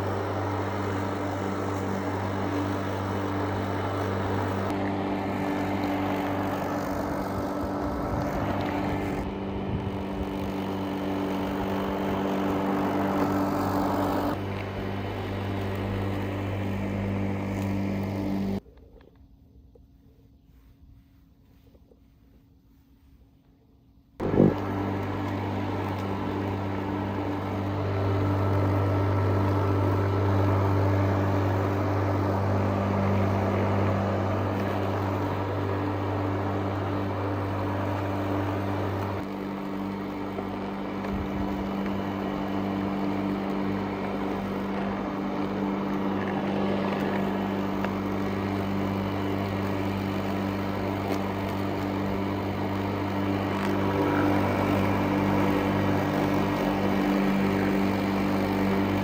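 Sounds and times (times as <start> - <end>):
lawn mower engine running: 0.0 - 18.6, 24.2 - 59.0.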